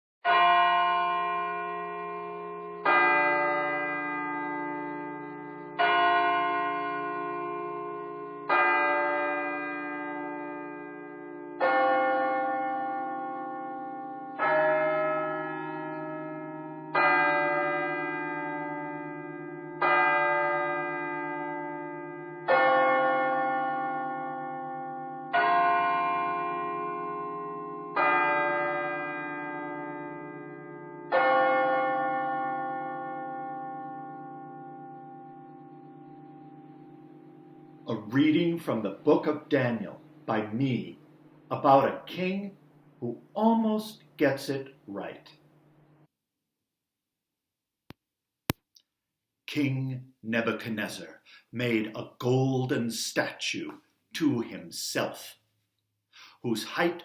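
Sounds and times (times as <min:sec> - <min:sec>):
large bell tolling: 0:00.3 - 0:45.4.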